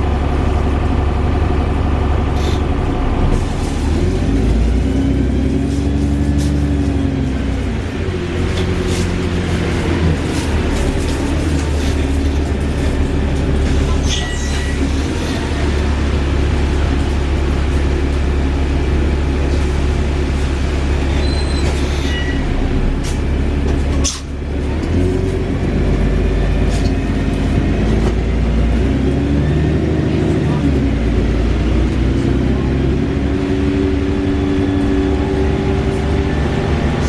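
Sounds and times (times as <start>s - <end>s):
bus engine whirring: 0.0s - 37.0s
short high squeaks: 21.1s - 22.4s.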